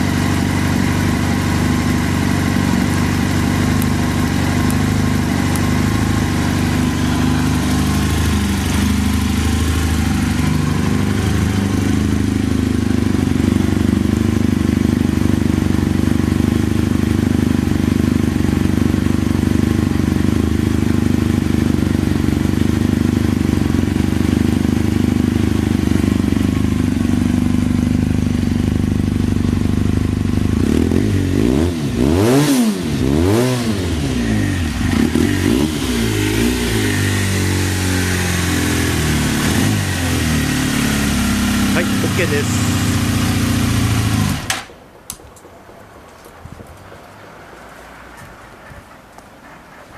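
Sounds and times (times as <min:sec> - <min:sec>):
motorcycle engine idling and revving: 0:00.0 - 0:44.8.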